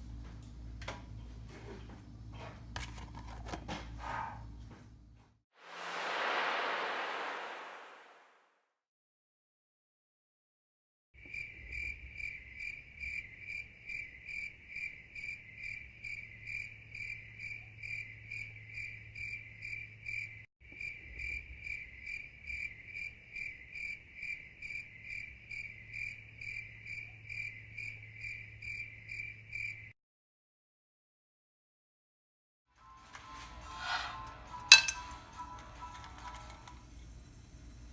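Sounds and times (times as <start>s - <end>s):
insect chirping: 11.2s - 29.9s.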